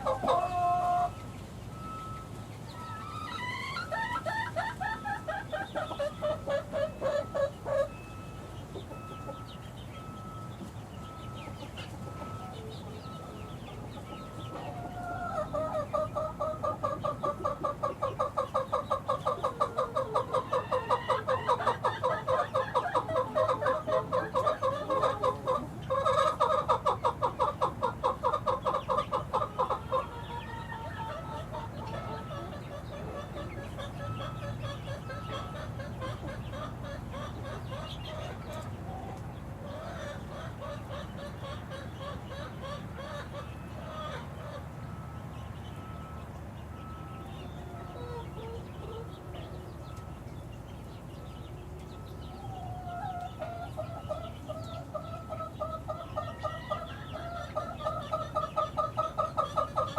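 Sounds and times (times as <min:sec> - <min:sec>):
chicks peeping and chirping: 0:00.0 - 0:59.9
rapid repeated chick calls: 0:00.0 - 0:59.9.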